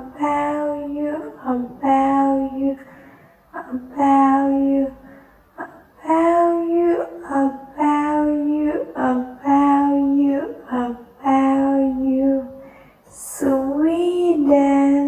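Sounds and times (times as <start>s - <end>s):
high voice singing: 13.1s - 15.0s.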